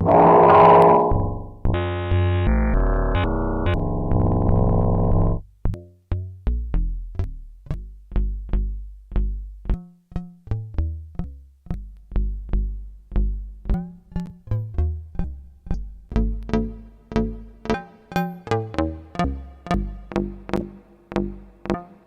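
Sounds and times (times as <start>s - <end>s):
struck percussive synth notes: 0.0s - 5.4s
sustained dense synth tone: 0.0s - 5.4s.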